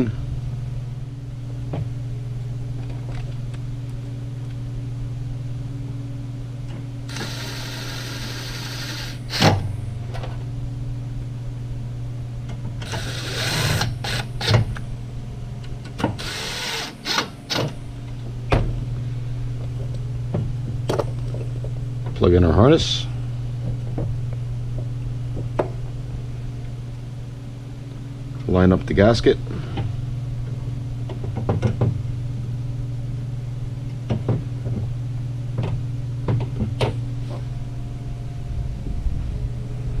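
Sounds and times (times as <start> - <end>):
low hum: 0.0 - 40.0
power driver driving screws: 7.1 - 9.6, 12.8 - 14.8, 16.1 - 17.7.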